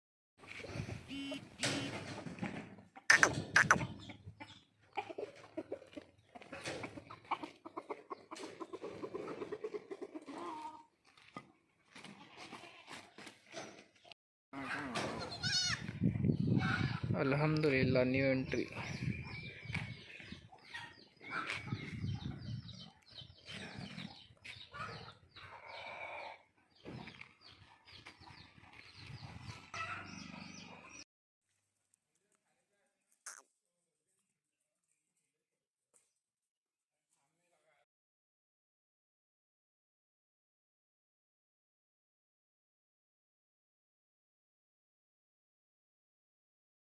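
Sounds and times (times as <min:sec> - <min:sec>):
chickens clucking: 0:00.4 - 0:10.8, 0:18.5 - 0:31.0
farm animals calling: 0:03.1 - 0:10.8, 0:18.4 - 0:31.0.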